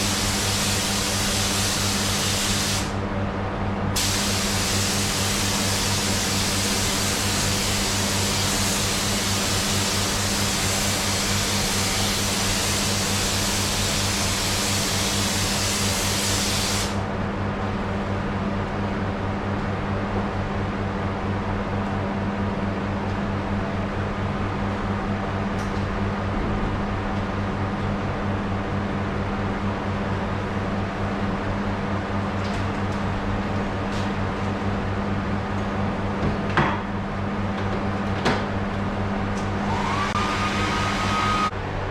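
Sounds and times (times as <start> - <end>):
paint spray gun hissing: 0.0 - 2.9, 4.0 - 17.0
steady fan hum: 0.0 - 41.9.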